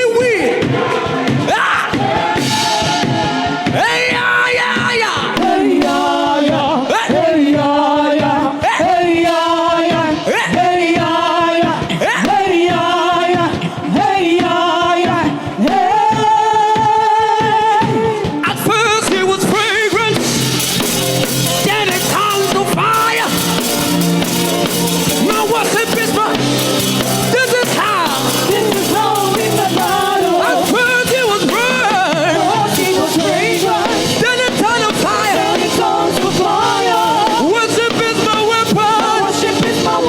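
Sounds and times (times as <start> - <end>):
band playing: 0.0 - 8.4, 18.7 - 40.0
drums: 0.0 - 40.0
person singing gospel: 0.0 - 40.0.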